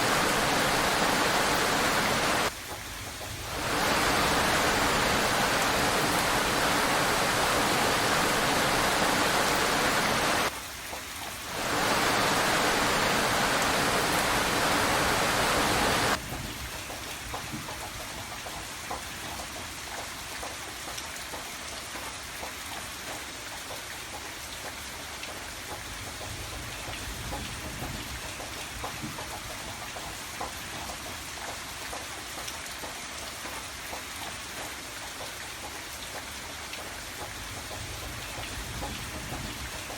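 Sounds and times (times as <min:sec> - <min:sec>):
heavy rain hissing: 0:00.0 - 0:02.5, 0:03.3 - 0:10.5, 0:11.4 - 0:16.2
raindrops ticking: 0:00.0 - 0:39.9.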